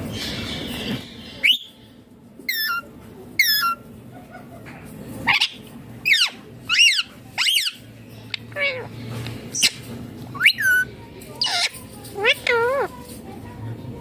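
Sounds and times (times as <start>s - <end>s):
parakeet shrill calls: 10.4s - 12.9s.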